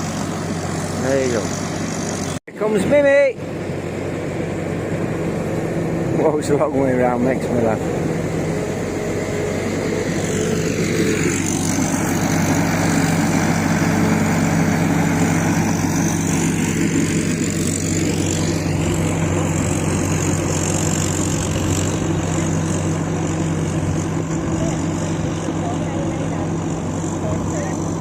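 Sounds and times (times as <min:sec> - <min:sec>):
combine harvester engine drone: 0:00.0 - 0:28.0.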